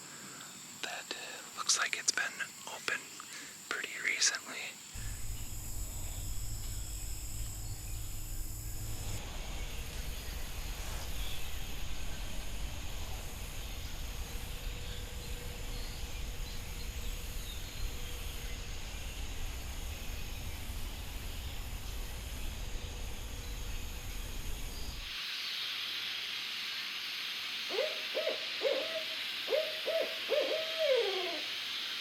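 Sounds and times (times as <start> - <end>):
insects chirring: 0.0 - 25.9
low rumble: 5.0 - 25.1.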